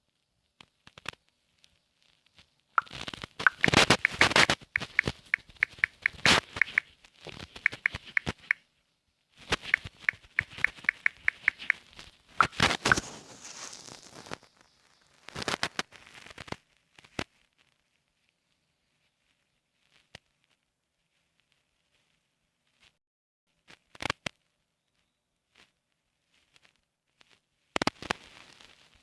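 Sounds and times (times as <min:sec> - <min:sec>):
touchscreen keyboard typing clicks: 0:02.8 - 0:06.8, 0:07.7 - 0:08.6, 0:10.1 - 0:11.8.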